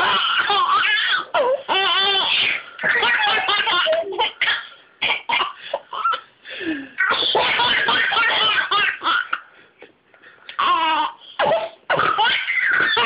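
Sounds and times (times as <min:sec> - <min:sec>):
babies laughing: 0:00.0 - 0:04.5, 0:07.0 - 0:09.4, 0:12.0 - 0:13.0.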